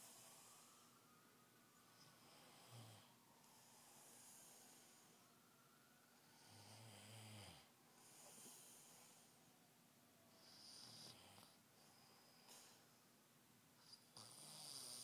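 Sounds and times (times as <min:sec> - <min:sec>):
man snoring: 0:02.2 - 0:03.1, 0:06.4 - 0:07.7, 0:10.4 - 0:11.5, 0:14.2 - 0:15.0.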